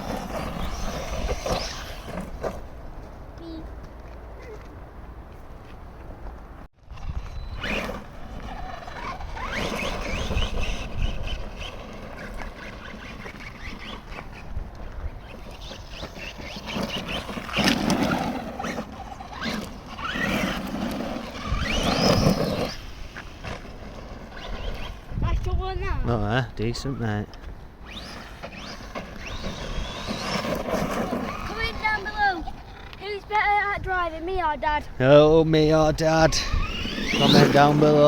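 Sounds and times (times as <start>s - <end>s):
electric motor whining: 0.0s - 2.4s, 7.1s - 25.2s, 27.8s - 33.0s, 36.2s - 38.0s
rough rushing noise: 0.0s - 2.8s, 7.0s - 26.0s, 27.8s - 33.2s, 36.2s - 38.0s.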